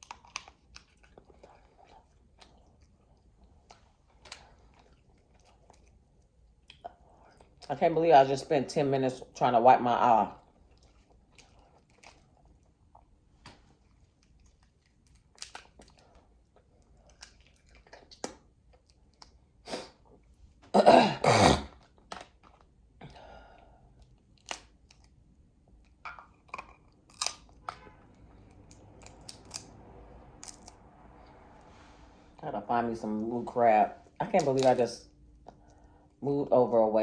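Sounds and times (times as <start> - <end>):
chewing: 0.0 - 7.7, 10.4 - 19.5
crab shell cracking: 14.2 - 16.1, 25.8 - 27.8, 28.6 - 29.7.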